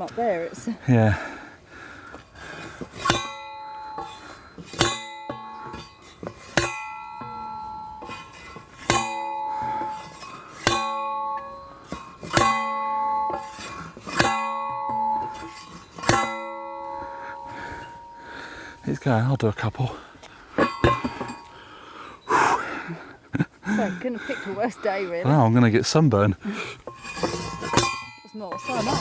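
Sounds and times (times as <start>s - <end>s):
post driver clanging on post: 2.4s - 18.8s, 20.5s - 22.0s, 26.7s - 29.0s.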